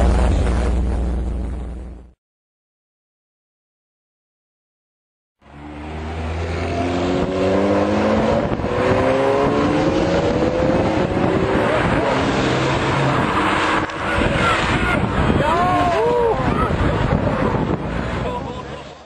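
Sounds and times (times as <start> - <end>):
car engine accelerating: 5.4 - 19.0
road and wind noise: 5.4 - 19.0.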